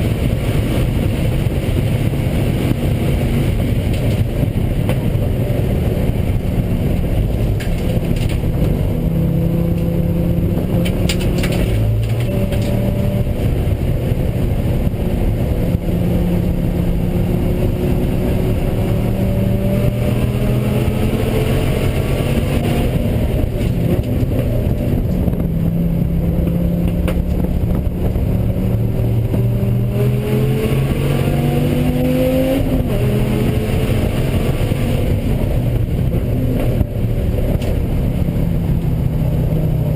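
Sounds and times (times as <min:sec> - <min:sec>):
car engine revving: 0:00.0 - 0:39.9.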